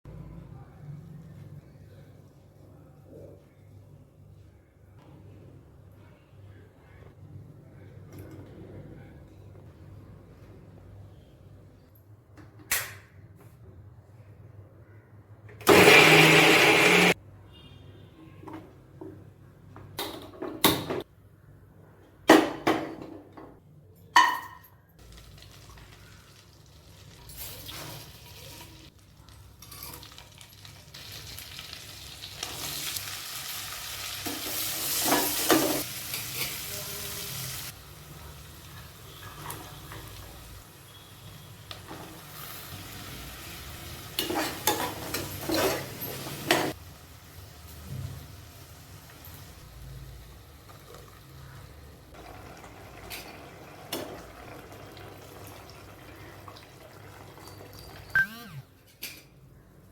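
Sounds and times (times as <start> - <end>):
food frying in hot oil: 25.0 - 57.8.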